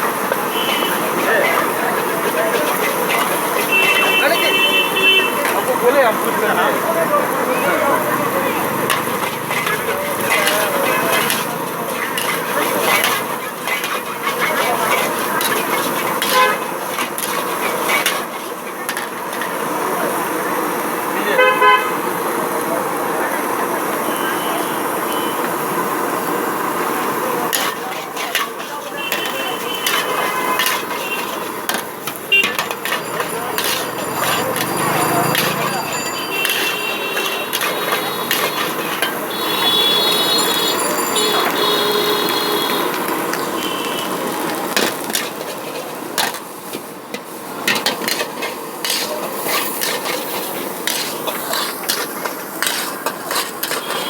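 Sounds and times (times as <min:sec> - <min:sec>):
background hubbub: 0:00.0 - 0:54.0
street background hum: 0:00.0 - 0:54.0
metal cookware clanking: 0:08.7 - 0:19.4, 0:27.5 - 0:42.9, 0:47.1 - 0:54.0.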